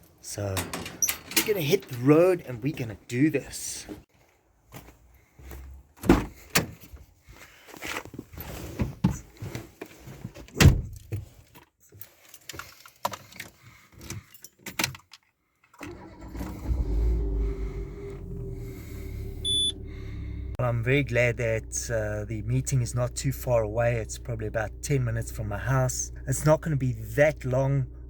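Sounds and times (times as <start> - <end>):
car engine running: 16.2 - 28.0.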